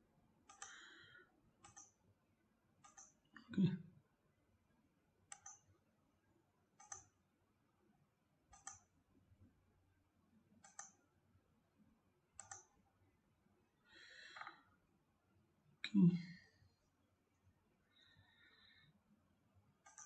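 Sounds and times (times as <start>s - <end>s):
computer mouse clicks: 0.4s - 0.8s, 1.6s - 2.0s, 2.8s - 3.2s, 5.3s - 5.7s, 6.8s - 7.2s, 8.5s - 8.9s, 10.6s - 11.1s, 12.4s - 12.8s, 14.3s - 14.6s, 19.8s - 20.0s.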